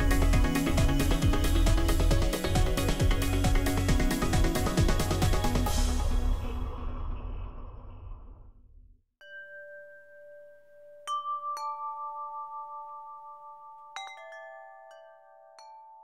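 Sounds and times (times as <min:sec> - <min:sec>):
background music: 0:00.0 - 0:07.1
bell-like struck notes: 0:09.2 - 0:16.0.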